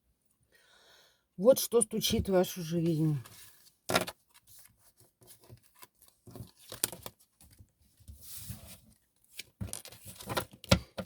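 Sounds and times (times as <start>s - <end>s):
cards rustling and clicking: 2.8s - 7.2s.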